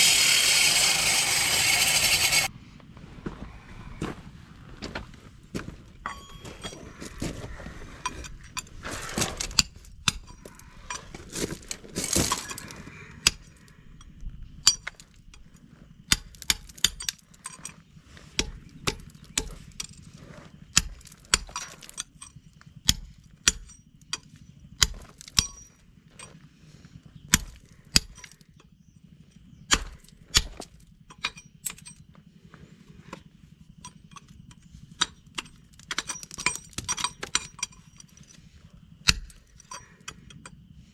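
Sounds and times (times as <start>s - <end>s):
low steady hum: 0.0s - 40.9s
sharp knocks and clinks: 6.0s - 7.2s, 29.7s - 32.2s, 33.8s - 38.4s, 39.0s - 40.6s.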